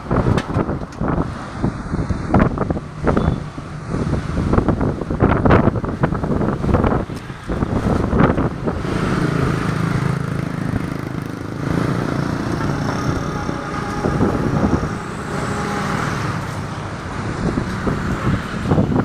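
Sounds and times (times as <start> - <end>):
strong wind on microphone: 0.0 - 19.0
faint high whistle: 3.2 - 3.4.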